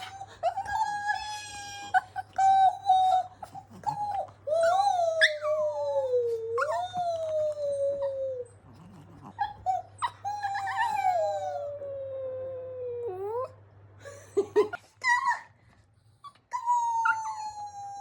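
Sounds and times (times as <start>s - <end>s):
dog yelping: 0.0s - 8.5s, 9.2s - 11.7s
dog howling: 0.0s - 13.5s.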